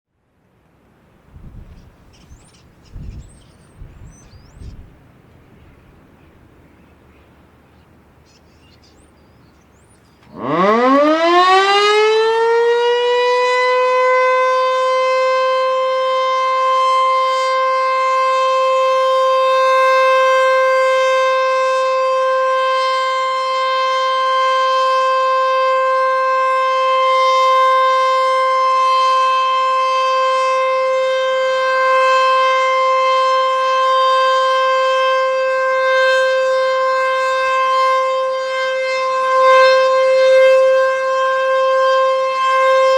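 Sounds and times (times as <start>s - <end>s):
tornado siren winding up: 10.2s - 42.9s.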